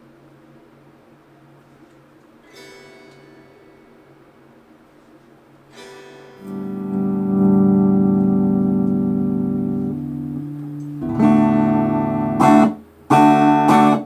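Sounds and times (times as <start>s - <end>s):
clean electric guitar chord strummed: 5.8s - 14.0s.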